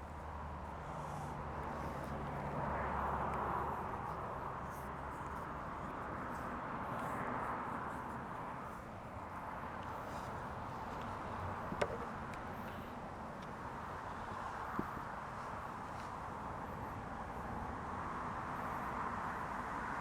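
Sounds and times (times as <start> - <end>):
cable rubbing and rustling: 9.7 - 13.6.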